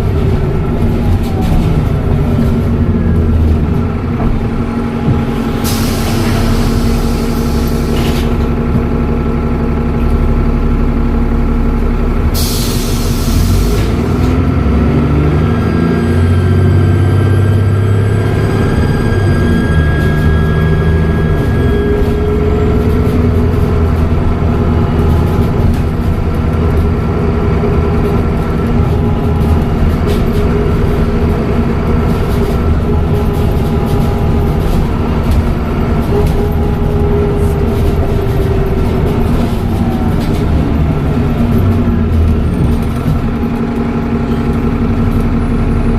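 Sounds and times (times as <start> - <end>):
bus engine running: 0.0 - 45.9
turbocharger whistle whine: 15.6 - 22.8.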